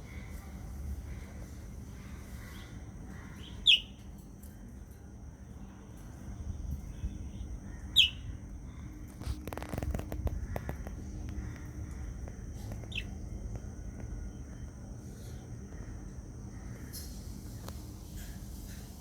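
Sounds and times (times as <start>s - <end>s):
budgerigar chirps: 3.4s - 4.0s, 7.9s - 8.2s, 12.8s - 13.1s
bird preening clicks and rustles: 9.1s - 14.1s.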